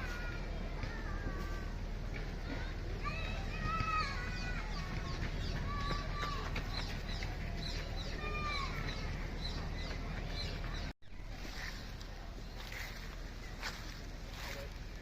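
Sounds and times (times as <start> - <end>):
low outdoor rumble: 0.0 - 15.0
small birds chirping and whistling: 4.3 - 14.6.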